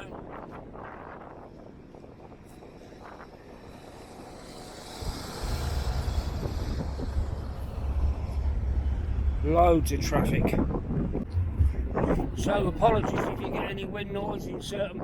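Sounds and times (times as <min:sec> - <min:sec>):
wind buffeting microphone: 0:00.0 - 0:15.0
road traffic going by: 0:01.6 - 0:12.9.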